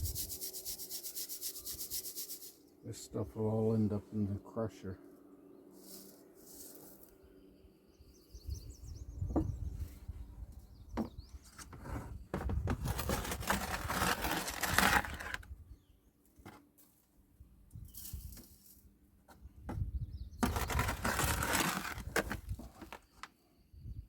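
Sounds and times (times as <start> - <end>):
gravel rattling through mesh screen: 12.7 - 15.4.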